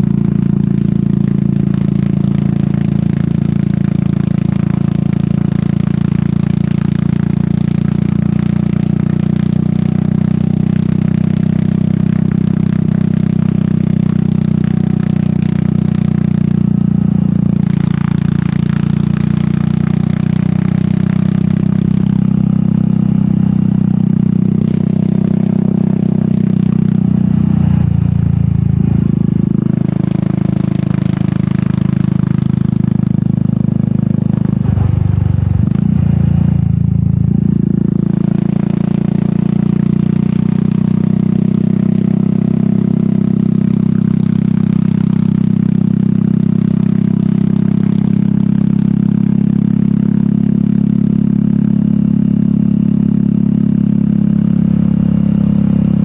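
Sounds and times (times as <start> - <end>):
motorcycle engine riding: 0.0 - 56.0.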